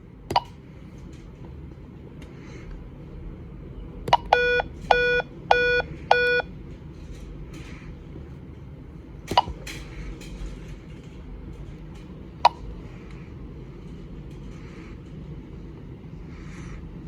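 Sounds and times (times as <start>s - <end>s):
low steady background hum: 0.0s - 17.0s
keypad key-press chirps: 0.3s - 0.5s, 4.1s - 6.5s, 9.3s - 9.6s.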